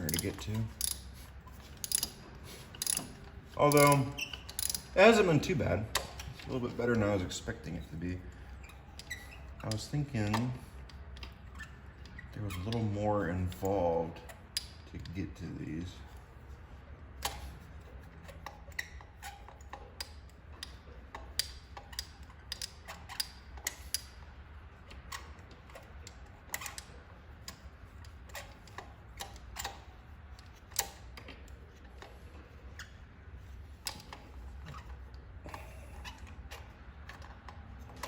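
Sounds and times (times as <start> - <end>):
hand tools clicking on metal: 0.0 - 7.2.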